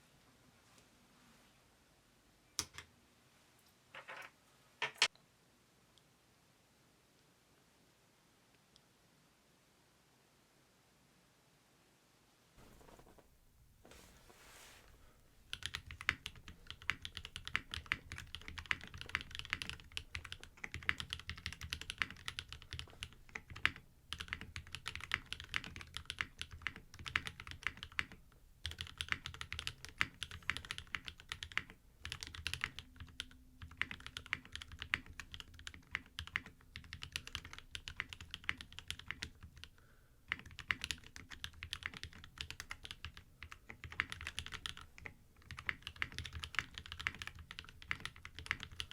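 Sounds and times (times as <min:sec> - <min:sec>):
fast typing on mechanical keyboard: 0:15.5 - 0:39.7, 0:40.3 - 0:48.9.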